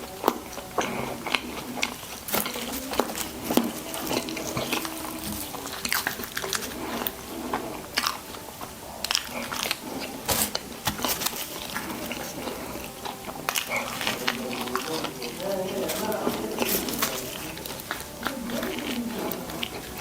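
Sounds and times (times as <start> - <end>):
biting and chewing: 0.0 - 20.0
crisp crunches: 0.0 - 20.0.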